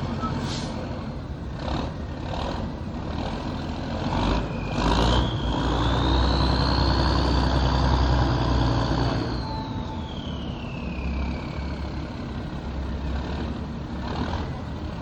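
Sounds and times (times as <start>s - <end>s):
diesel engine rumbling: 0.0s - 15.0s
high engine whine: 4.4s - 15.0s.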